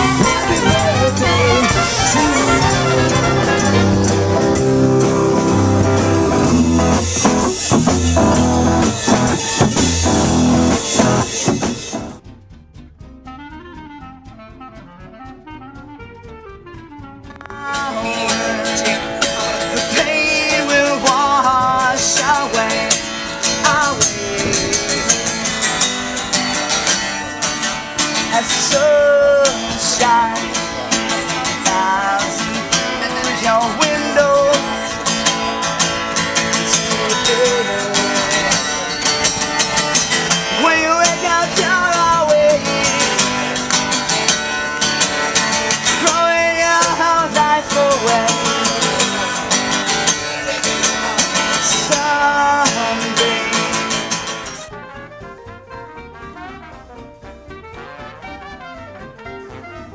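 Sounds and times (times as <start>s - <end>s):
person singing: 0.0s - 4.2s, 51.7s - 54.2s
strummed acoustic guitar: 0.0s - 59.9s.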